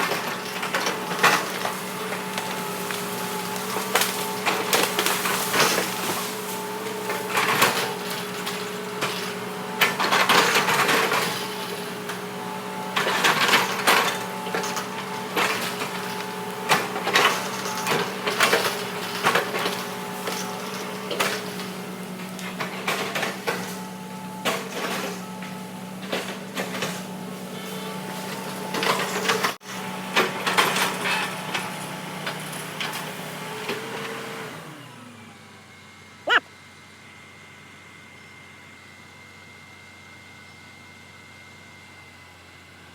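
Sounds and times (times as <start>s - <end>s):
excavator diesel engine running: 0.0s - 40.1s
cracking and crunching: 0.1s - 9.2s.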